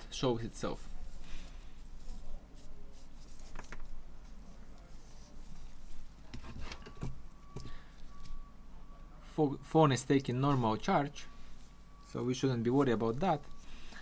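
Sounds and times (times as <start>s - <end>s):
low steady hum: 0.0s - 14.0s
hands handling smartphone: 0.8s - 4.4s
faint high tone: 6.8s - 13.9s.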